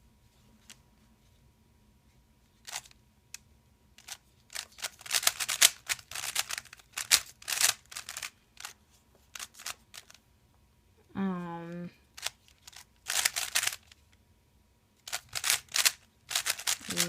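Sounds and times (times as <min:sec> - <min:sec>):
puzzle cube plastic clicks: 0:02.6 - 0:10.2, 0:12.1 - 0:14.0, 0:15.0 - 0:17.0.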